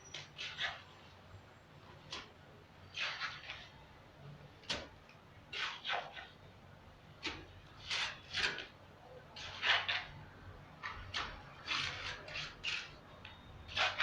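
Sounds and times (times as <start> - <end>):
cement scraping: 0.0 - 0.9, 2.9 - 3.8, 5.5 - 6.4, 7.2 - 8.8, 9.4 - 10.2, 10.8 - 14.0.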